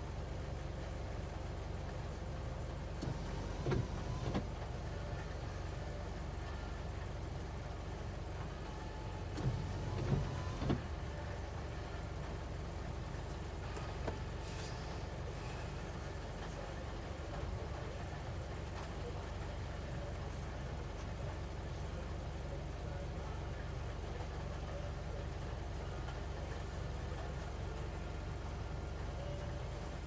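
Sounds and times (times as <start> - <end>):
diesel engine idling: 0.0 - 30.0.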